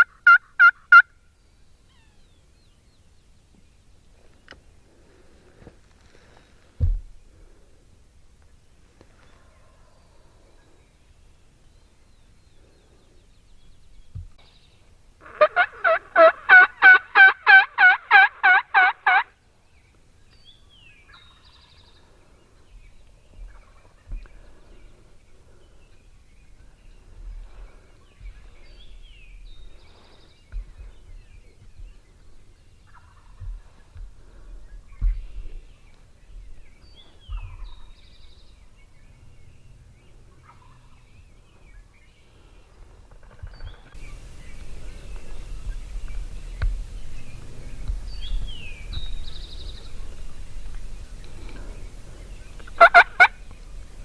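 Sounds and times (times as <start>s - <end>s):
turkey yelps: 0.0s - 1.1s, 15.2s - 19.3s, 52.7s - 53.4s
faint songbird chirps: 1.0s - 5.2s, 19.6s - 54.0s.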